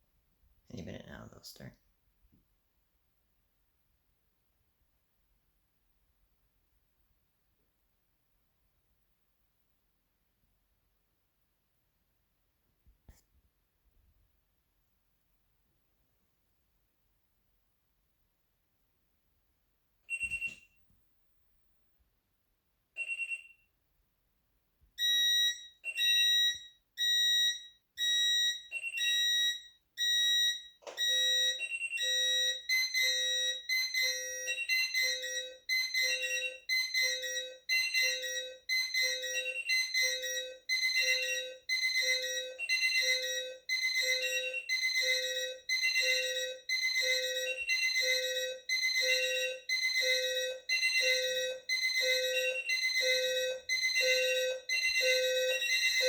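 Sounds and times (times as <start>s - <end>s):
high alarm clock beeps: 20.1s - 20.8s, 23.0s - 23.7s, 25.0s - 56.0s
lower-pitched alarm beeps: 25.0s - 56.0s.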